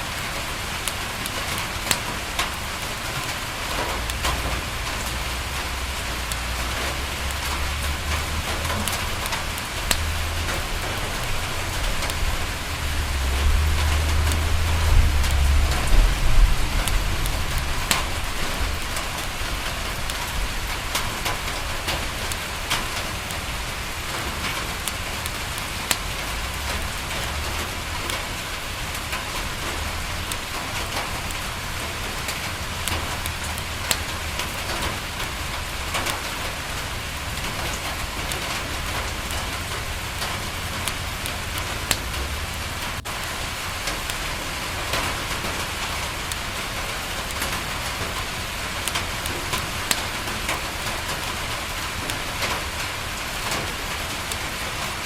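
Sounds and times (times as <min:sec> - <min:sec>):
rain pattering on window: 0:00.0 - 0:55.0
wood fire crackling: 0:00.0 - 0:55.0
low rumble: 0:05.0 - 0:20.4.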